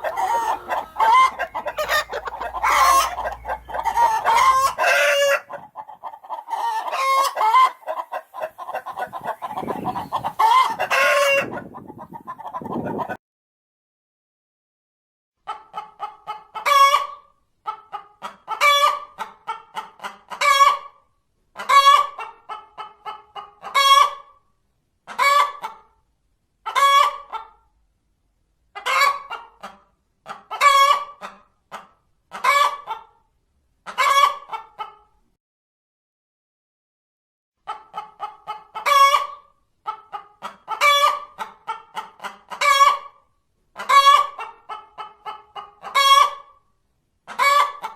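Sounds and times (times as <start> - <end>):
hen cackling: 0.0 - 13.2.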